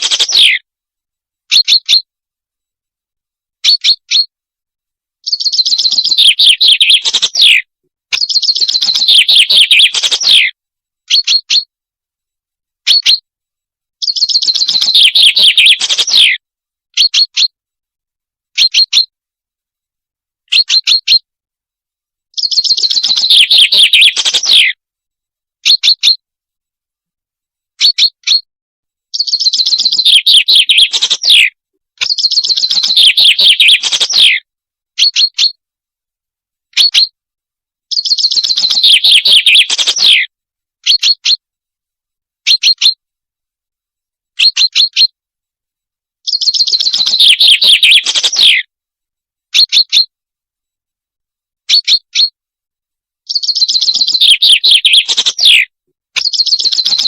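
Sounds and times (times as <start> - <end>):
bird trilled song: 0.0 - 0.6, 1.5 - 2.1, 3.6 - 4.3, 5.2 - 11.7, 12.9 - 13.2, 14.0 - 16.4, 17.0 - 17.6, 18.6 - 19.1, 20.5 - 21.2, 22.3 - 24.8, 25.6 - 26.2, 27.8 - 28.5, 29.1 - 35.6, 36.7 - 37.2, 37.9 - 40.2, 40.8 - 41.4, 42.5 - 43.0, 44.4 - 45.1, 46.2 - 48.7, 49.6 - 50.1, 51.7 - 52.3, 53.2 - 57.0.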